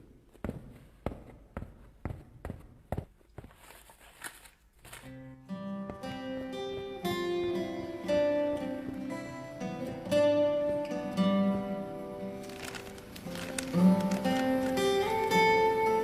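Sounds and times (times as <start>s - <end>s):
acoustic guitar plucking and strumming: 5.0s - 16.0s.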